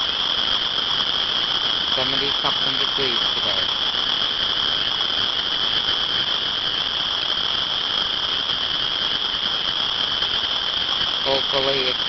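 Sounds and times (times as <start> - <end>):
chorus of frogs calling: 2.0 - 3.8.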